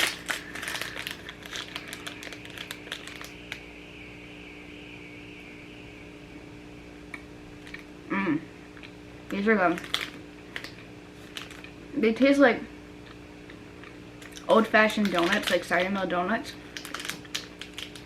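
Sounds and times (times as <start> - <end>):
small clicks and crinkles: 0.0 - 3.6, 8.8 - 11.8, 13.0 - 18.0
room hum: 0.0 - 18.0
person humming: 8.1 - 8.5.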